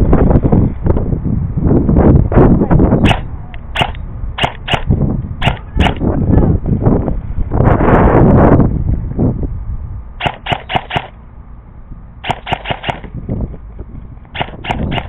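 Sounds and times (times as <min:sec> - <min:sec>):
airsoft guns firing: 0:03.1 - 0:06.0, 0:10.2 - 0:11.1, 0:12.2 - 0:13.1, 0:14.4 - 0:15.0.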